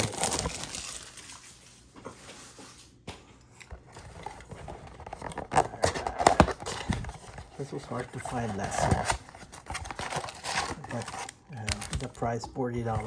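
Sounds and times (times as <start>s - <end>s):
cardboard tearing and scraping: 0.0s - 1.2s, 4.2s - 13.0s
cardboard box rustling: 3.9s - 13.0s.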